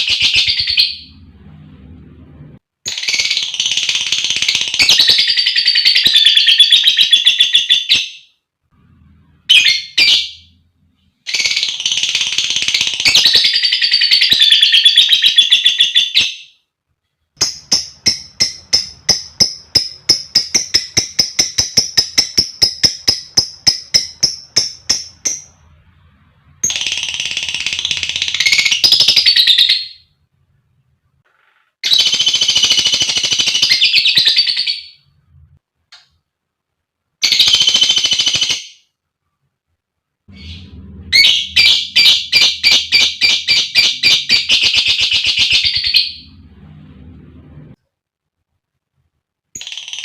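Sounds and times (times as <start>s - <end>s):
lovebird chattering: 17.4s - 25.6s
sharp repeated chirps: 17.4s - 25.7s, 40.3s - 46.4s.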